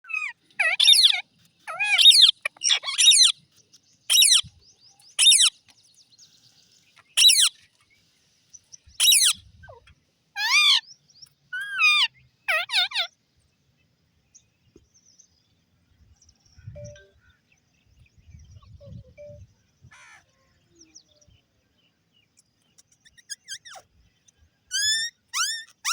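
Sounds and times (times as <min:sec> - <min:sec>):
birds calling loudly: 0:00.1 - 0:03.5, 0:04.1 - 0:05.6, 0:06.9 - 0:07.7, 0:08.8 - 0:13.2, 0:18.3 - 0:21.2.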